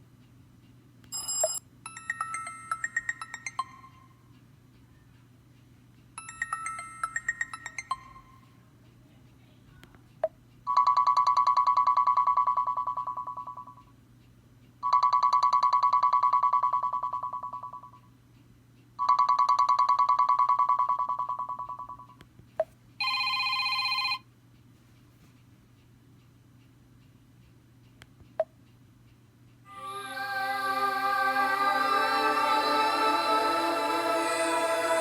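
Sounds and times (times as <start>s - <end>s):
multi-pitched beep ringtone: 1.1s - 4.0s, 6.2s - 8.3s, 10.7s - 13.8s, 14.8s - 18.0s, 19.0s - 22.2s
trilling electronic ringtone: 1.1s - 4.1s, 6.2s - 8.4s, 10.7s - 13.8s, 14.8s - 18.0s, 19.0s - 22.2s.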